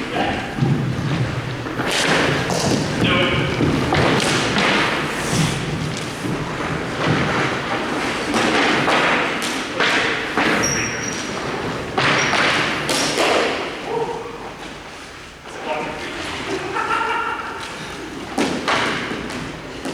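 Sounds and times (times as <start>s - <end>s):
hockey sticks and ball striking: 0.6s - 13.7s.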